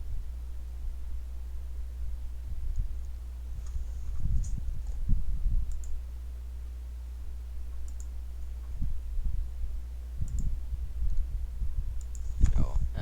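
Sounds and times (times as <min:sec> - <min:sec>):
steady low hum: 0:00.0 - 0:13.0
soft low thumps: 0:02.0 - 0:05.8, 0:07.2 - 0:13.0
computer mouse clicks: 0:05.6 - 0:06.0, 0:07.8 - 0:08.1, 0:10.2 - 0:10.5, 0:12.0 - 0:12.6.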